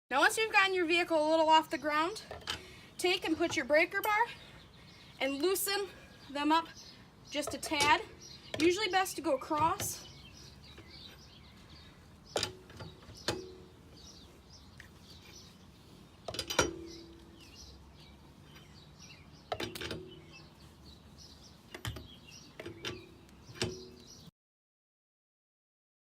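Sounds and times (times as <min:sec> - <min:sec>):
birds chirping: 0:00.1 - 0:24.3
breaker bar clanking on lug nuts: 0:07.4 - 0:10.1, 0:12.3 - 0:13.7, 0:16.3 - 0:17.4, 0:19.4 - 0:20.4, 0:21.7 - 0:24.2.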